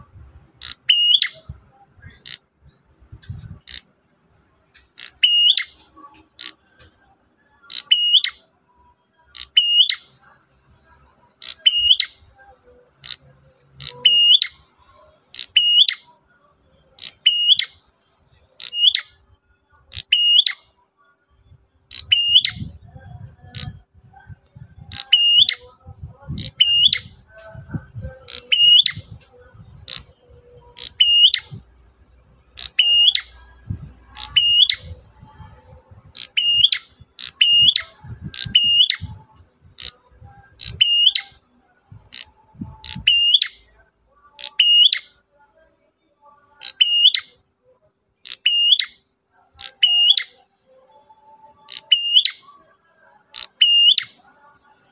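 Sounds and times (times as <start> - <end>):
bird calling high chip: 0.6 - 1.4, 4.9 - 6.6, 7.6 - 8.4, 11.4 - 12.2, 18.6 - 19.1, 21.9 - 22.6, 24.9 - 25.6, 28.2 - 29.2, 29.8 - 31.5, 32.5 - 33.4, 34.1 - 34.9, 36.1 - 39.1, 39.8 - 40.0, 44.4 - 45.1
low rumble: 33.4 - 34.2, 34.8 - 36.2, 38.0 - 40.6.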